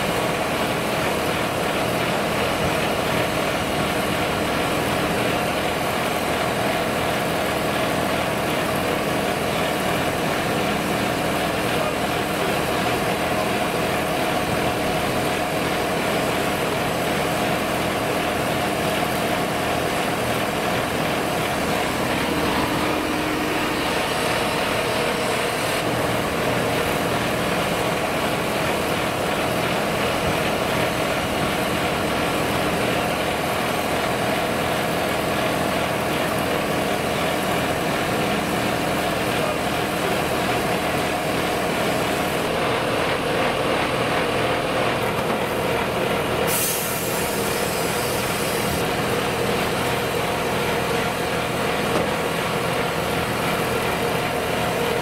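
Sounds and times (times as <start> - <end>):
tractor engine running: 0.0 - 55.0
wood chipper running: 0.0 - 55.0
high hiss of released air: 46.5 - 48.8.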